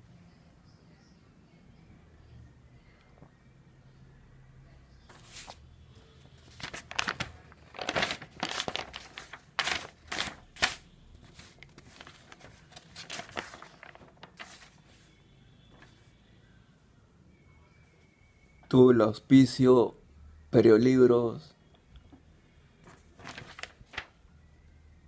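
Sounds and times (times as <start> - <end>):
paper pages rustling: 5.1 - 5.6, 6.3 - 15.1, 15.7 - 16.1, 22.8 - 24.1.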